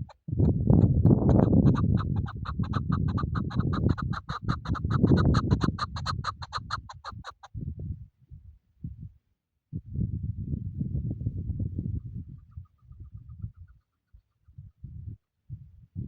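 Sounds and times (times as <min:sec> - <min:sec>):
partridge clucking calls: 0:00.0 - 0:07.5.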